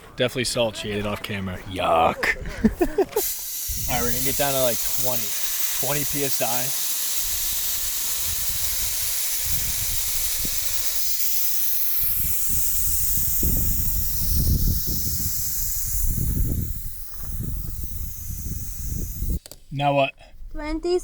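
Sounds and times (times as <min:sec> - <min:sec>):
air hissing from tyre valve: 0:03.1 - 0:19.4.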